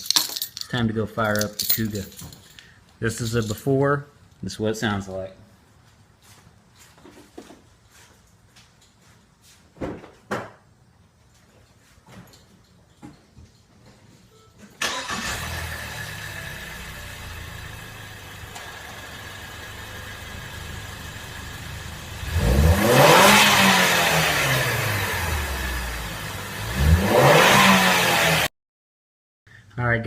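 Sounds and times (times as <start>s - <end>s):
car engine starting and idling: 14.8s - 28.1s
car engine revving: 14.8s - 28.5s.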